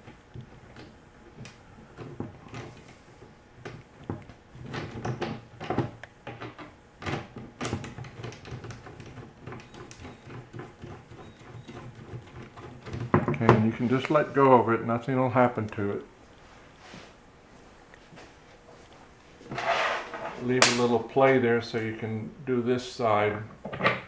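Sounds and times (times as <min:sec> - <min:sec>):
knocks and clicks of handling a tray: 0:03.6 - 0:13.8.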